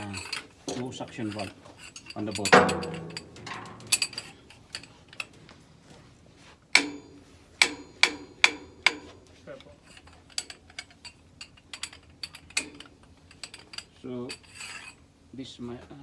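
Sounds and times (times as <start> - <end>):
metal tools knocking on metal: 0.0 - 5.3.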